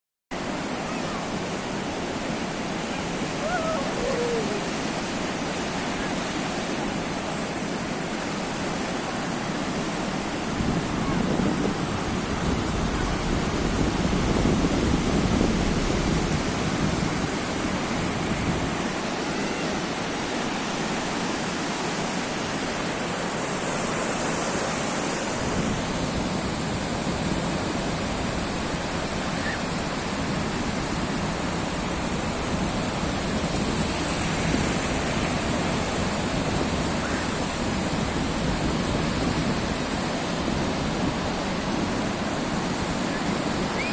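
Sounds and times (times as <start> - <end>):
sea waves washing onto shore: 0.4 - 43.9.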